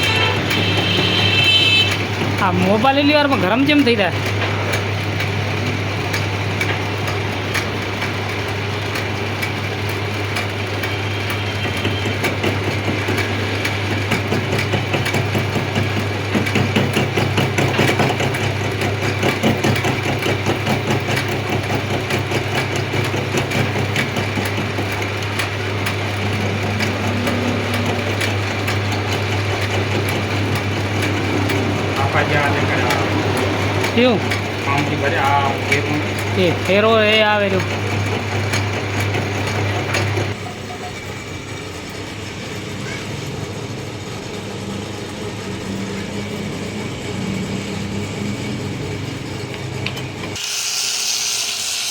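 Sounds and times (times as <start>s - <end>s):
lathe humming: 0.0s - 51.9s.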